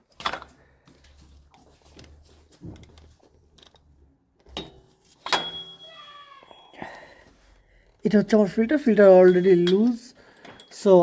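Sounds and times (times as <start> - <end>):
soft knocks and handling noise: 0.0 - 5.9
sharp metallic clink: 4.6 - 6.1.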